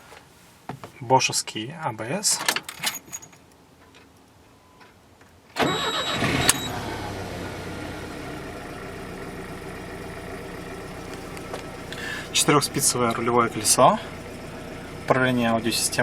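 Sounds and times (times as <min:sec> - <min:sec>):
engine starting and idling: 0:05.6 - 0:16.0.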